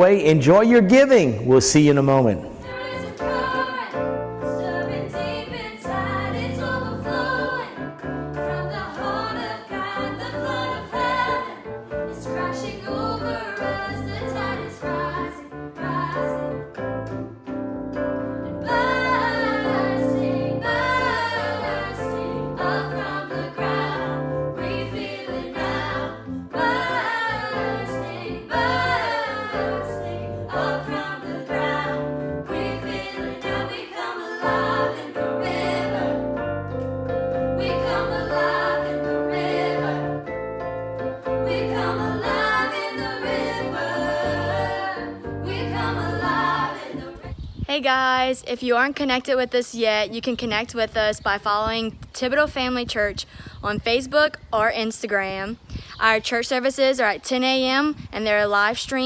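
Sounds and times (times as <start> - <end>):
voices singing: 0.0 - 16.7, 18.6 - 36.6, 37.6 - 40.3, 41.4 - 47.4.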